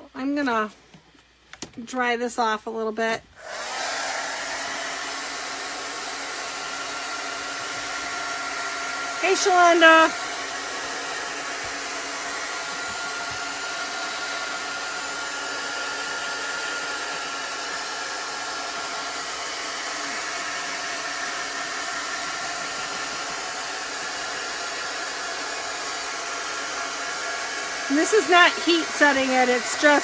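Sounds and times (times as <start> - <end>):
hot-air dryer blowing: 3.4 - 30.0.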